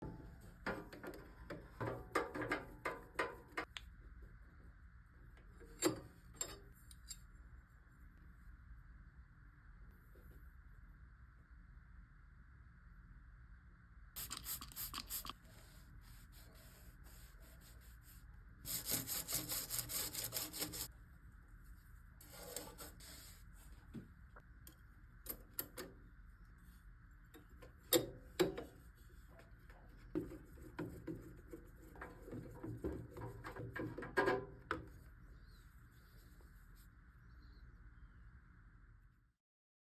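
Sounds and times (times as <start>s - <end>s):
faint steady hum: 0.0s - 39.4s
rubbing and scraping strokes: 14.2s - 20.9s, 21.7s - 23.9s.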